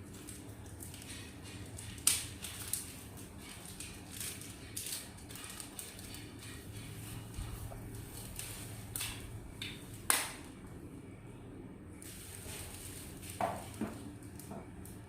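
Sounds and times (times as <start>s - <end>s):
low steady hum: 5.4s - 15.0s.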